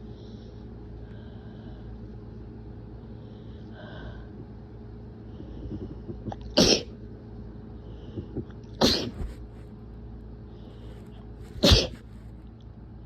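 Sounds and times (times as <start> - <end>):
person sneezing: 6.6 - 6.9, 8.8 - 9.4, 11.5 - 12.1.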